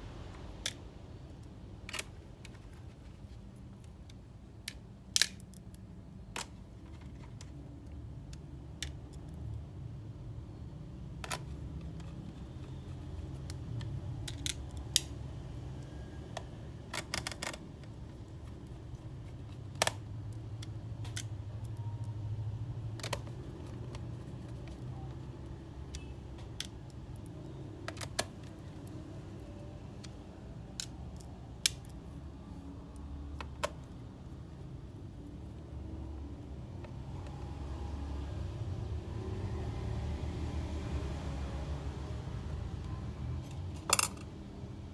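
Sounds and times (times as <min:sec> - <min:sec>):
small tools clicking and tapping: 0:11.2 - 0:15.2, 0:43.4 - 0:44.4.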